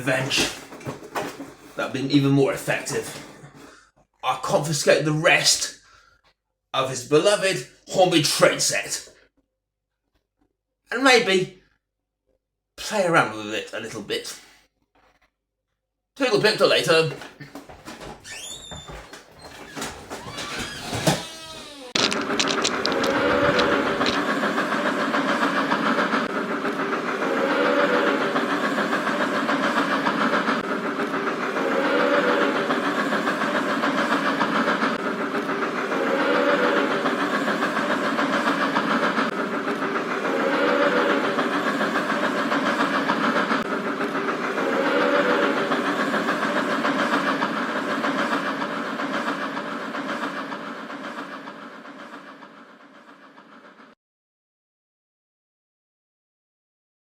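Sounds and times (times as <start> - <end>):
model train running on track: 0.0 - 0.6, 1.8 - 3.2, 4.4 - 5.8, 6.8 - 9.2, 16.2 - 17.2, 21.2 - 54.0.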